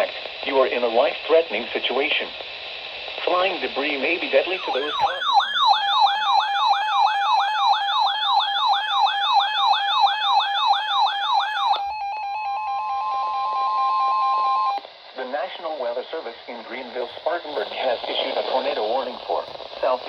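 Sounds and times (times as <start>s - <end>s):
steady alarm tone: 4.6s - 14.8s
warbling siren alert: 4.6s - 14.8s.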